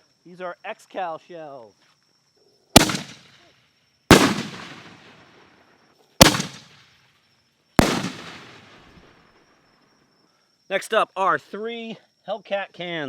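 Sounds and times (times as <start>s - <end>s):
firework cracks with echo: 2.8s - 3.3s, 4.1s - 5.2s, 6.2s - 6.9s, 7.8s - 8.9s.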